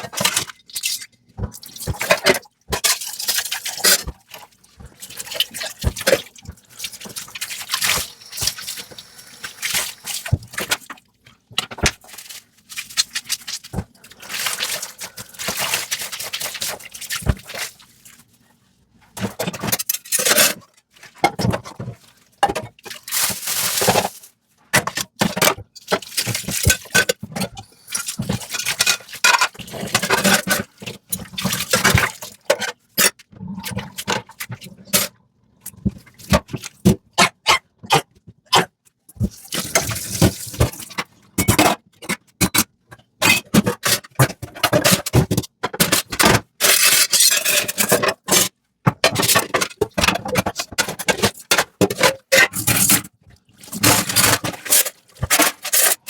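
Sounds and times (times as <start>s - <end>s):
water splashing and running: 3.0s - 10.9s, 11.9s - 18.1s, 39.5s - 40.9s.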